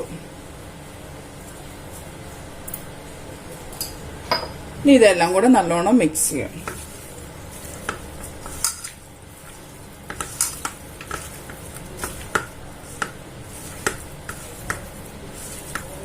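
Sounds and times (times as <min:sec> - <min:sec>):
spoon stirring thick marinade: 0:06.5 - 0:16.0.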